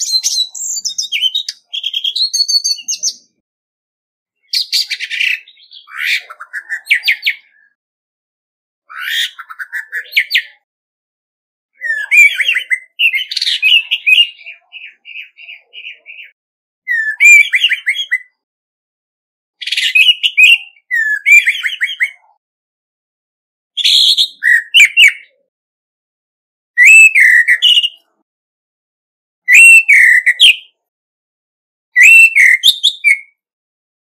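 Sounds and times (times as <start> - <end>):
thrush singing whistles and trills: 0.0 - 3.4, 11.8 - 18.4, 19.6 - 22.2, 23.8 - 25.4, 26.8 - 28.2, 29.4 - 30.8, 31.9 - 33.4.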